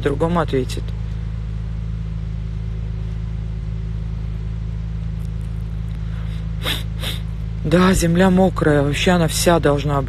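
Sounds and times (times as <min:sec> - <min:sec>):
low engine hum: 0:00.0 - 0:10.0.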